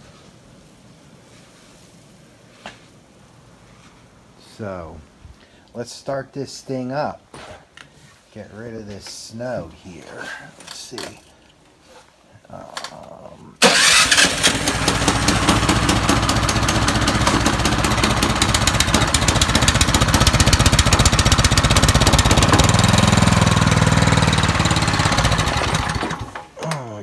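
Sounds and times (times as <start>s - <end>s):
snowblower engine running: 13.6s - 26.5s.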